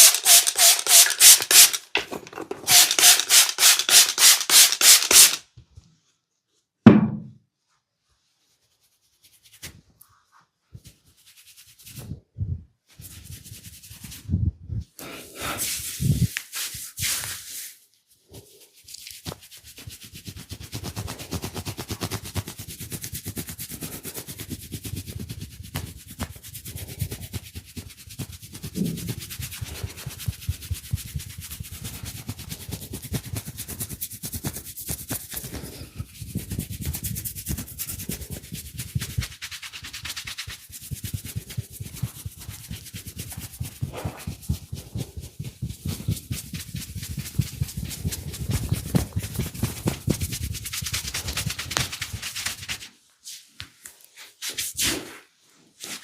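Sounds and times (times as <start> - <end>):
hands rubbing hair and skin: 0.0 - 2.0, 2.7 - 5.4, 7.6 - 14.4, 15.1 - 56.0.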